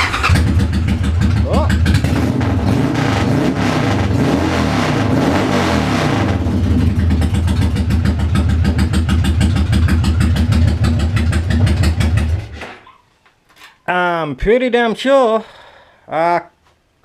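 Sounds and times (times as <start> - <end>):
motorcycle engine revving and idling: 0.0 - 12.6.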